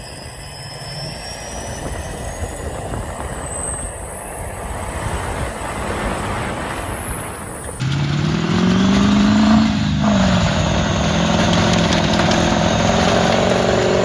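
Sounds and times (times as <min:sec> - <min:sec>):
high thin whistle rising in pitch: 0:00.0 - 0:07.8
diesel truck engine under throttle: 0:00.0 - 0:14.0.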